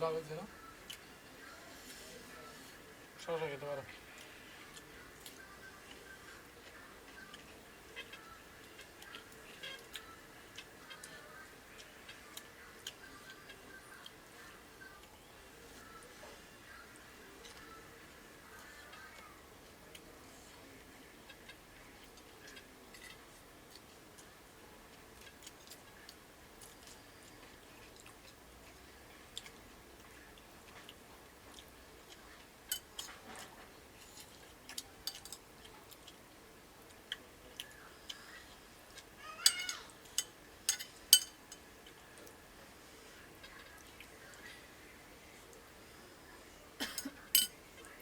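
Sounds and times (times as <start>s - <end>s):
chewing: 3.9s - 20.6s, 21.9s - 42.4s
food clicking on a plate: 39.4s - 41.6s.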